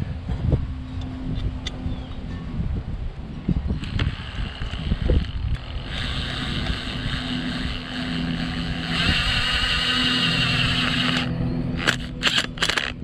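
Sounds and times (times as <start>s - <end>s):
low motor hum: 0.0s - 13.0s
hammer drill chattering: 3.8s - 13.0s.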